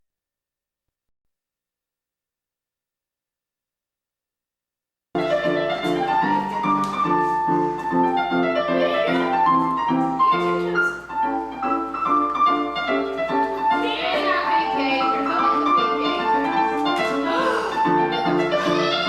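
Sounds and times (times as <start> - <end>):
piano music: 5.2 - 19.0.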